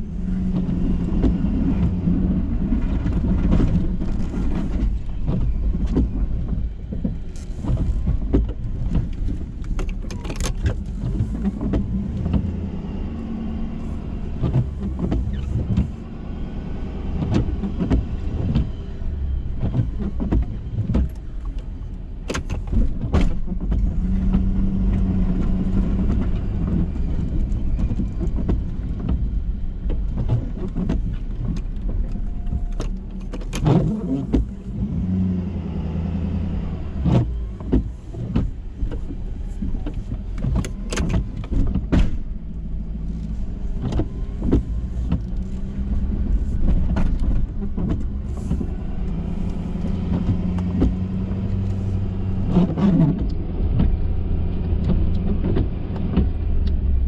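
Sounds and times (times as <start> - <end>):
sharp knocks and clunks: 40.3 - 42.3.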